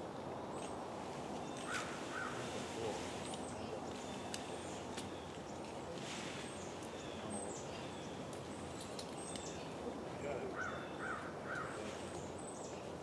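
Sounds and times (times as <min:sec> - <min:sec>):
steady low background noise: 0:00.0 - 0:13.0
small birds chirping: 0:03.2 - 0:13.0.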